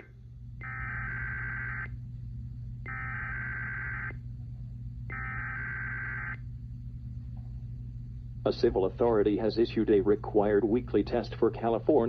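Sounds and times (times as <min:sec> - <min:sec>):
steady low hum: 0:00.0 - 0:12.0
buzzy digital data tones: 0:00.6 - 0:01.9, 0:02.9 - 0:04.2, 0:05.1 - 0:06.4.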